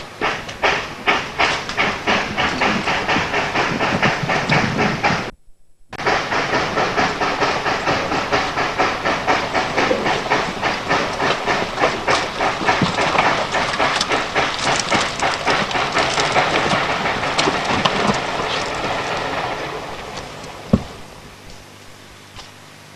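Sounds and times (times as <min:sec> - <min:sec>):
steam engine exhaust chuffing: 0:00.0 - 0:05.3, 0:06.0 - 0:22.9
steam hissing: 0:00.0 - 0:05.3, 0:06.0 - 0:22.9.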